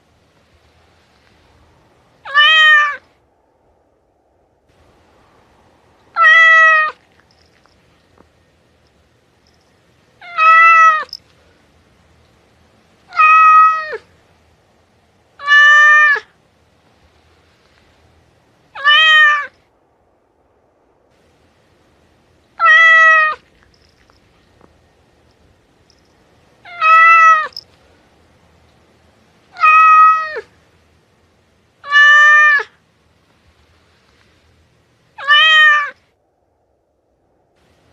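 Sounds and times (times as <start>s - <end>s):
cat meowing: 2.2s - 3.0s, 6.1s - 7.1s, 10.2s - 11.2s, 13.1s - 14.1s, 15.4s - 16.3s, 18.8s - 19.5s, 22.6s - 23.5s, 26.6s - 27.6s, 29.5s - 30.5s, 31.8s - 32.7s, 35.2s - 36.0s.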